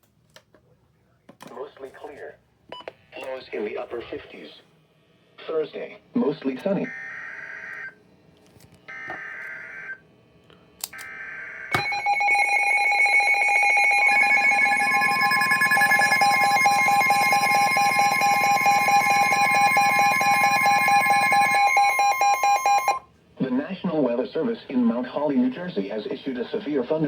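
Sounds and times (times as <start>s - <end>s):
pulsing two-tone attention signal: 11.8s - 23.0s.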